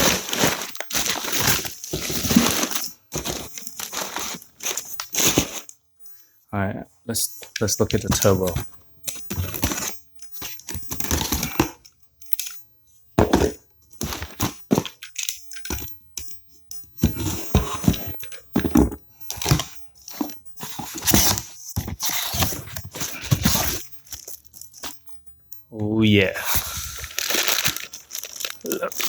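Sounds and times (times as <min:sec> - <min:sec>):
packaging tearing and rustling: 0:00.0 - 0:05.7, 0:20.6 - 0:24.9, 0:26.4 - 0:29.0.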